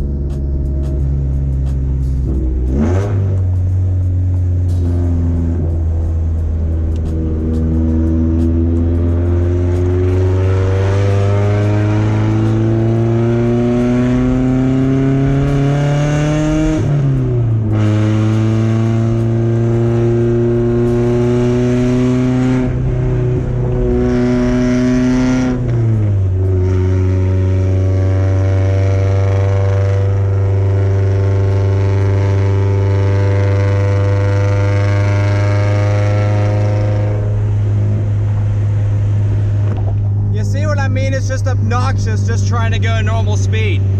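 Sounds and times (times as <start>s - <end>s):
car engine accelerating through gears: 0.0s - 43.9s.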